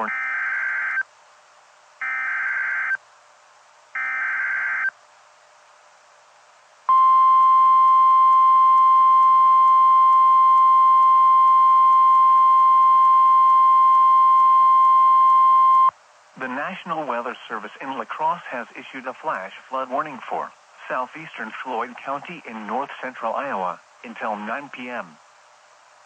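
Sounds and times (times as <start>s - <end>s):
steady single-pitch alarm tone: 6.9s - 15.9s.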